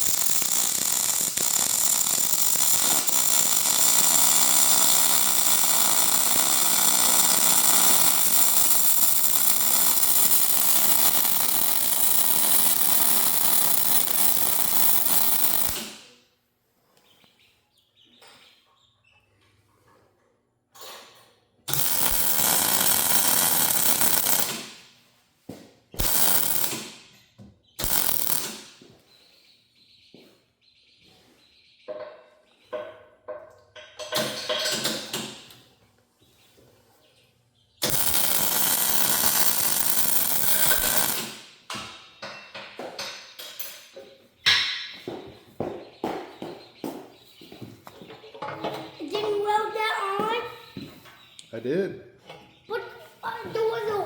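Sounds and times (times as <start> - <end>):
arc welder crackling: 0.0 - 16.1, 21.7 - 24.9, 26.0 - 27.2, 27.8 - 28.8, 37.8 - 41.6.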